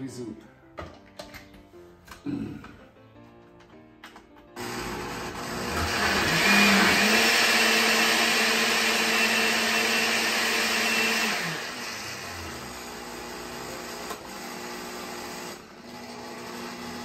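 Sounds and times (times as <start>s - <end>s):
blender motor running: 4.6s - 17.0s.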